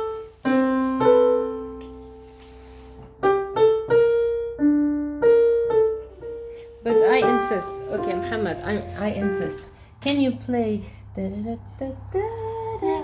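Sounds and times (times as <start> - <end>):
slow piano melody: 0.0 - 10.0.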